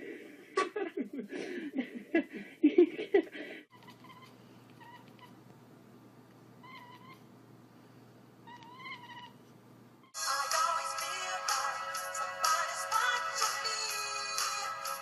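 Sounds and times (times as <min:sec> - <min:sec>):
faint steady hum: 0:00.0 - 0:15.0
cat meowing: 0:03.7 - 0:05.4, 0:06.6 - 0:07.2, 0:08.5 - 0:09.4.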